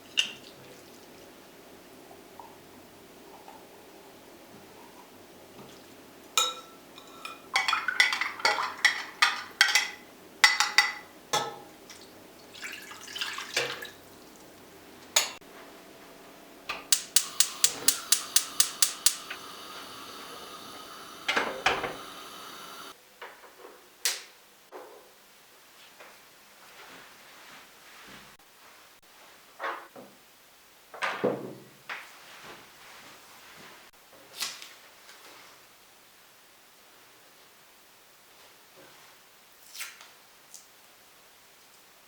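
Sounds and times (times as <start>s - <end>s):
dishes and cutlery clinking: 6.4s - 11.7s.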